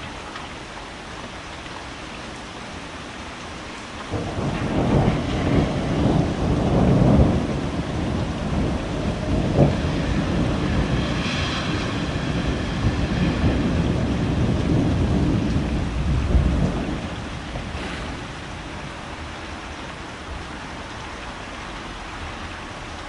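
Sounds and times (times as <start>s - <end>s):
steady rain: 0.0s - 23.0s
thunder rolling: 4.1s - 19.4s
sharp thunder crack: 4.2s - 18.7s.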